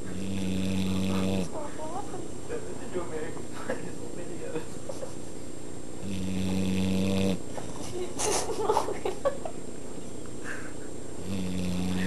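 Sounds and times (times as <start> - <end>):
dog snoring loudly: 0.0 - 1.6, 6.0 - 7.4, 11.2 - 12.0.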